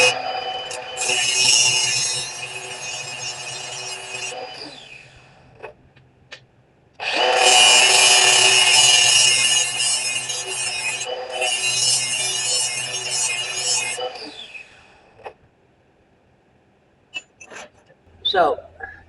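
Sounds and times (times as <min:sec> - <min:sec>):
power tool grinding steel: 0:00.0 - 0:05.2, 0:07.0 - 0:14.7.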